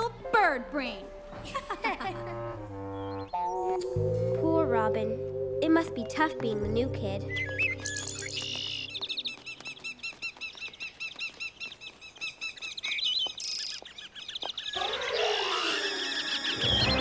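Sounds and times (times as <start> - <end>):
cartoon birds chirping: 2.8 - 4.2, 7.2 - 17.0.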